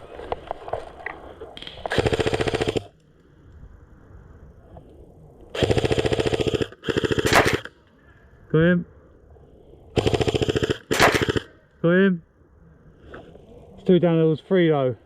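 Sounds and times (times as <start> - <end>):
airsoft rifle rapid firing: 1.9 - 2.9, 5.6 - 7.7, 10.0 - 11.6.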